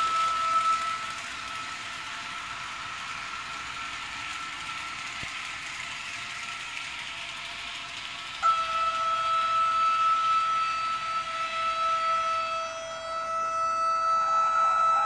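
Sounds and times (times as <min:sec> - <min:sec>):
model train gear noise: 0:00.0 - 0:15.0
loud electronic tone: 0:08.4 - 0:15.0.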